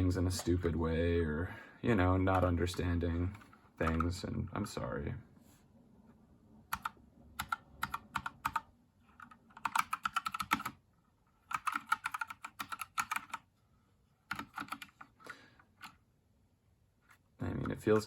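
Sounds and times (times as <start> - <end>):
typing on mechanical keyboard: 6.7 - 10.8, 11.4 - 13.5, 14.3 - 15.2.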